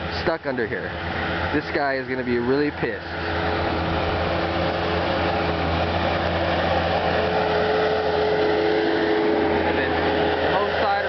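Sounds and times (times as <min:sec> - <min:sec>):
bulldozer engine humming: 0:00.0 - 0:11.0.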